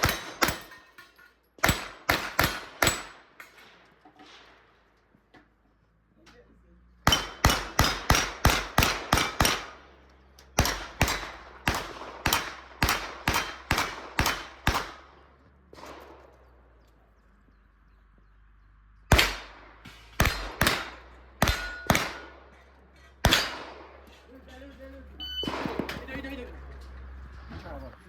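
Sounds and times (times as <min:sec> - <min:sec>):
rapid gunshots: 0:01.6 - 0:03.2, 0:07.1 - 0:09.9, 0:10.6 - 0:15.1, 0:19.1 - 0:22.5, 0:23.2 - 0:24.0
short ringing tone: 0:25.2 - 0:25.6.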